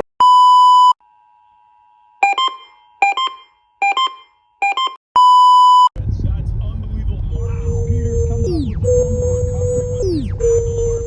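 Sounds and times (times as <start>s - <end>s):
groups of quick beeps: 2.2s - 5.9s, 7.4s - 11.0s
loud steady beep: 2.2s - 5.9s, 7.3s - 11.0s.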